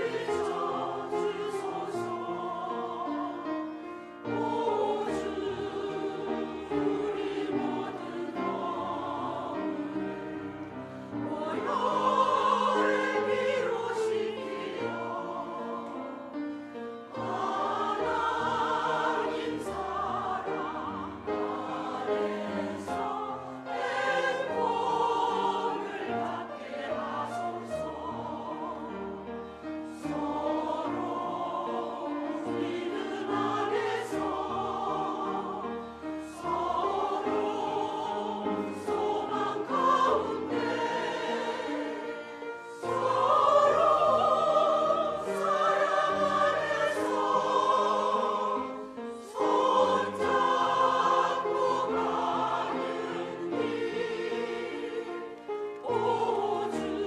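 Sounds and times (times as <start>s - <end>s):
choir singing a hymn: 0.0s - 57.0s.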